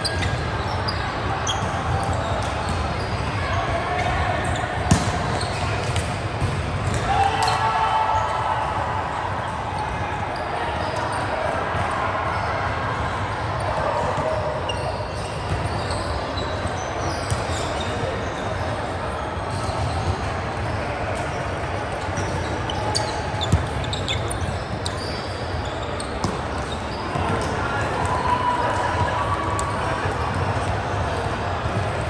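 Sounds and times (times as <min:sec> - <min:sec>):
court background noise: 0:00.0 - 0:32.0
volleyball hits: 0:04.8 - 0:07.8.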